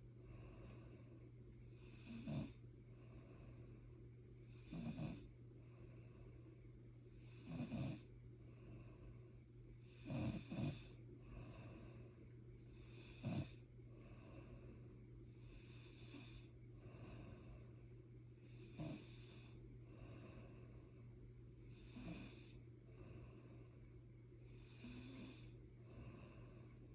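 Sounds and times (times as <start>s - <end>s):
steady low hum: 0.0s - 26.9s
loud snores: 1.8s - 2.6s, 4.5s - 5.3s, 7.2s - 8.1s, 9.9s - 12.0s, 12.8s - 14.6s, 15.4s - 17.5s, 18.5s - 20.7s, 21.7s - 23.5s, 24.6s - 26.6s.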